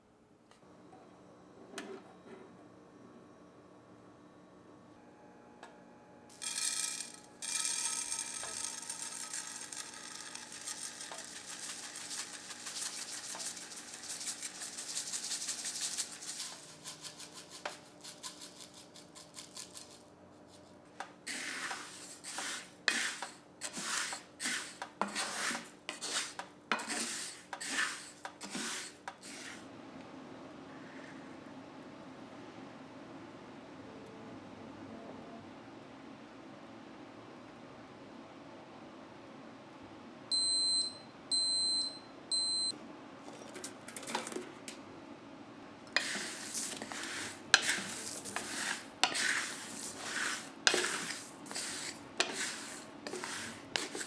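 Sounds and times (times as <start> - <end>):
salt scraping in a pan: 6.3 - 20.7, 21.3 - 29.6, 45.9 - 54.0.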